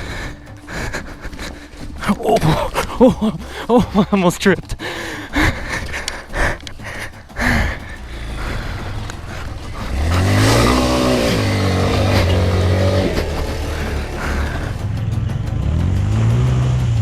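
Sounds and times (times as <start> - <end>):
motorcycle engine revving: 5.4 - 17.0.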